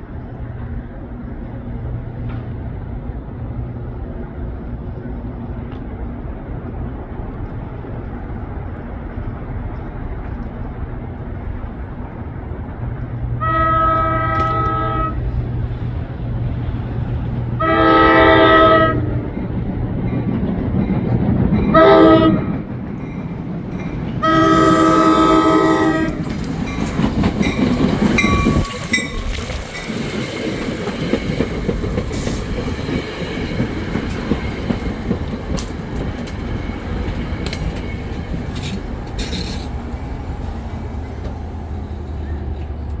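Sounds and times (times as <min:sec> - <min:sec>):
train rumble: 0:00.0 - 0:43.0
train air horn blasts: 0:13.4 - 0:15.4, 0:17.6 - 0:19.3, 0:21.7 - 0:22.6, 0:24.2 - 0:26.3
train wheels clicking over rail joints: 0:13.9 - 0:43.0.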